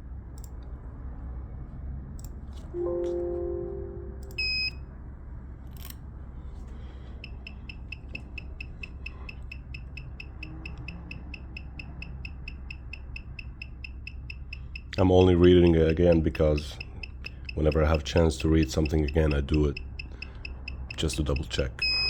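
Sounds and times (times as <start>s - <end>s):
short high beeps: 2.8s - 4.8s, 21.8s - 22.0s.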